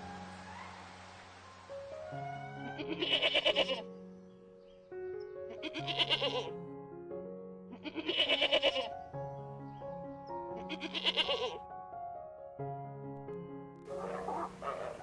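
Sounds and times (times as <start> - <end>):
animal bleating: 2.3 - 3.9, 5.5 - 6.6, 7.7 - 9.0, 10.5 - 11.6, 13.9 - 15.0.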